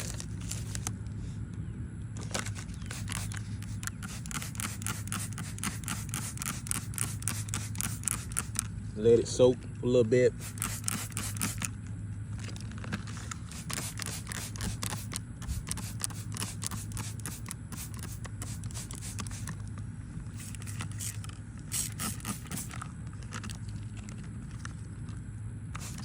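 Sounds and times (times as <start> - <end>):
scratchy clicks and crackles: 2.2 - 8.7, 12.4 - 19.8.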